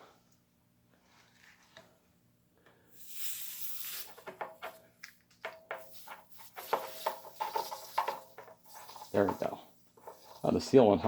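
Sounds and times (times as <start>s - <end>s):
air hissing from tire: 2.9s - 4.2s.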